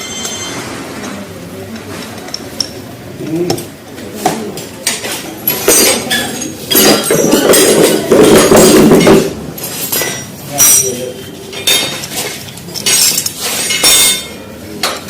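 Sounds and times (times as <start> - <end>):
metal tools clinking and knocking: 0.0 - 0.7, 4.8 - 15.0.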